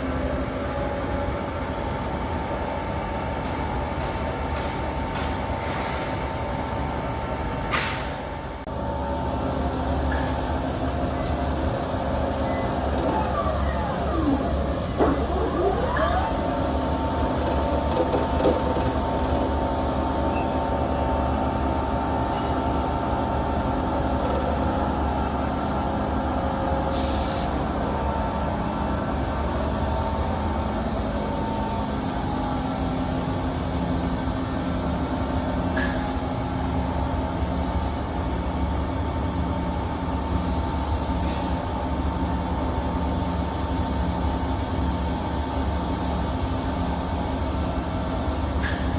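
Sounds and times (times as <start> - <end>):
machine hum: 8.7 - 26.8.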